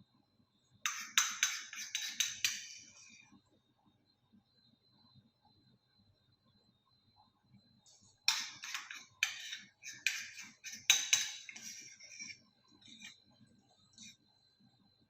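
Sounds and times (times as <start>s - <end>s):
utensils and glassware clattering: 8.3s - 13.2s.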